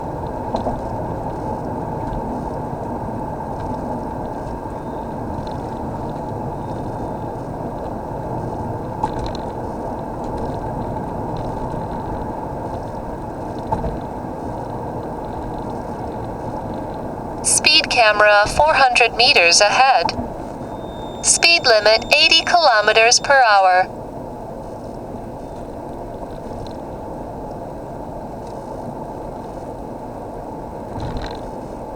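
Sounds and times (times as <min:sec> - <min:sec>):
car road and engine noise: 0:00.0 - 0:21.2.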